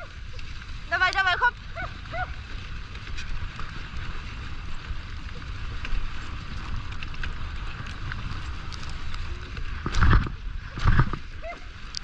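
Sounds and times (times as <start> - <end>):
wind rumbling on microphone: 0.0 - 12.0.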